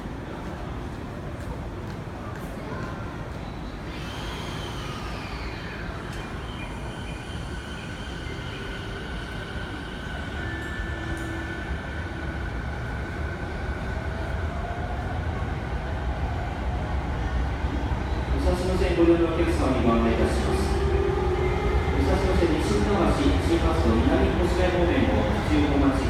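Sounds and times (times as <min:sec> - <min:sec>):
electric train motors whining: 0:03.9 - 0:11.8.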